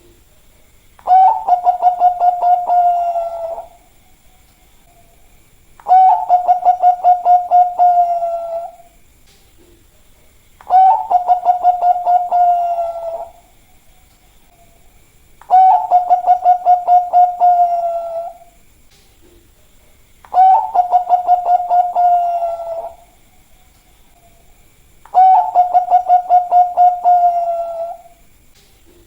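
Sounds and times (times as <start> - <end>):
dove cooing: 1.0 - 3.9, 5.8 - 9.0, 10.6 - 13.6, 15.4 - 18.6, 20.3 - 23.2, 25.1 - 28.2.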